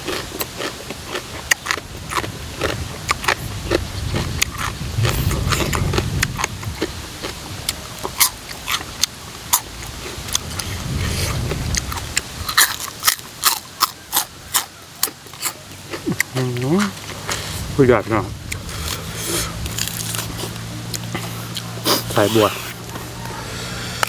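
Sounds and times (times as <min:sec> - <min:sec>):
person chewing: 0:00.0 - 0:24.0.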